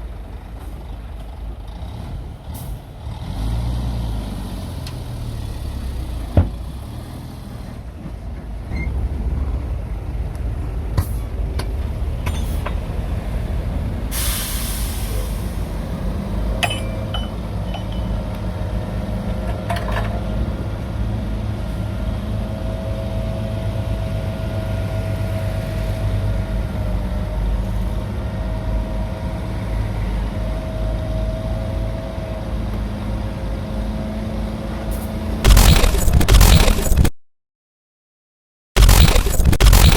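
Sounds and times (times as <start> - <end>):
heavy diesel engines running: 0.0 - 37.0
air brake hiss: 14.1 - 15.8
steady whine: 38.8 - 39.9.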